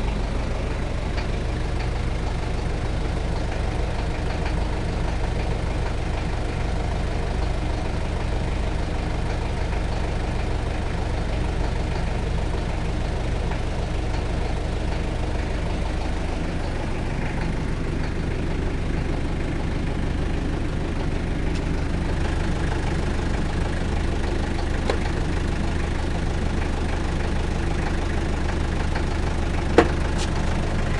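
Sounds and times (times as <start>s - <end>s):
diesel engine idling: 0.0s - 30.9s.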